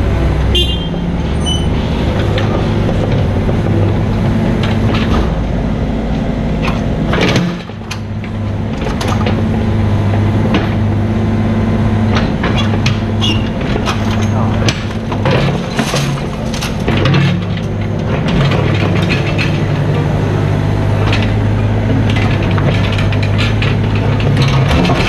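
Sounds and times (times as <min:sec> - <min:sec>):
diesel engine running: 0:00.0 - 0:25.0
machine knocks and scrapes: 0:01.2 - 0:05.5, 0:20.9 - 0:25.0.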